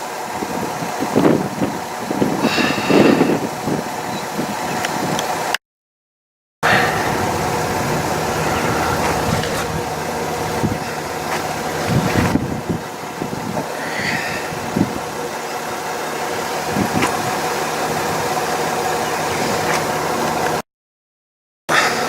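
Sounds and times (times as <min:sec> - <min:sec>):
steady rushing noise: 0:06.7 - 0:12.8
vehicle engine running: 0:06.7 - 0:12.8, 0:19.9 - 0:20.6
low thumps: 0:06.8 - 0:12.8.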